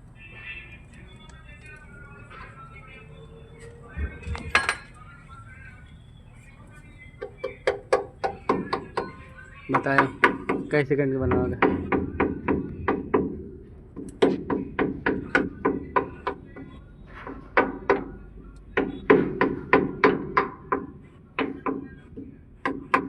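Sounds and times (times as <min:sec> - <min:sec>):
hammer striking metal: 0:07.6 - 0:16.3.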